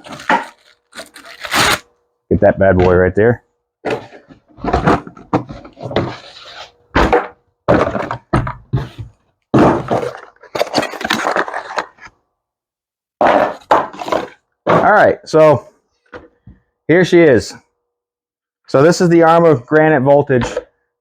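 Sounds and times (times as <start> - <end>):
toy truck unboxing knocks and rustles: 0.0 - 1.9, 3.8 - 12.2, 13.2 - 14.9.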